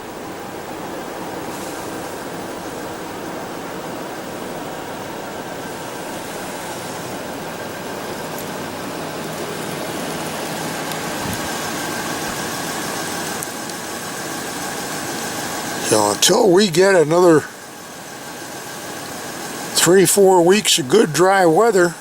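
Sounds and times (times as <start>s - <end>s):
steady rushing noise: 0.1s - 14.0s
truck engine idling: 1.0s - 22.0s.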